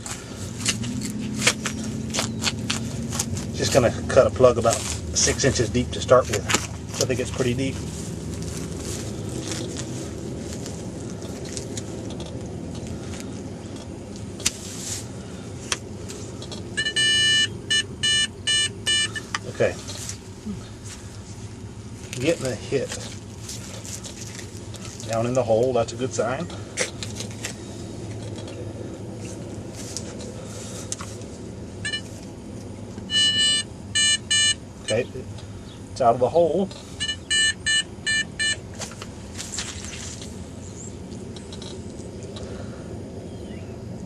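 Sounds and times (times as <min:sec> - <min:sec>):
steady low rumble: 0:00.0 - 0:44.0
metal detector beeps: 0:16.8 - 0:19.4, 0:31.8 - 0:32.1, 0:33.1 - 0:35.1, 0:37.0 - 0:38.6.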